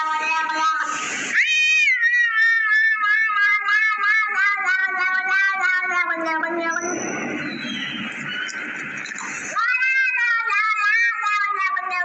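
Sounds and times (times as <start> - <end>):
high cat-like yowl: 0.0 - 6.8, 9.6 - 12.0.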